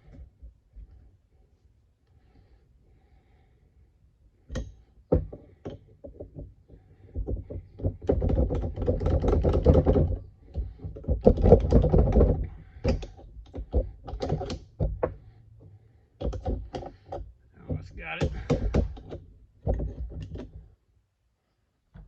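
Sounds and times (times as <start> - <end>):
metal vise parts rattling and knocking: 4.6 - 15.3, 16.2 - 20.7.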